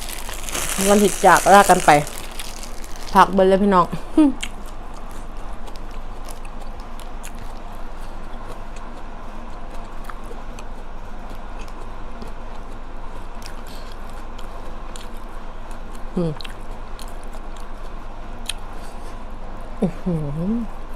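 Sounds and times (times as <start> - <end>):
person chewing food: 0.0 - 3.2
low background hum: 0.0 - 20.9.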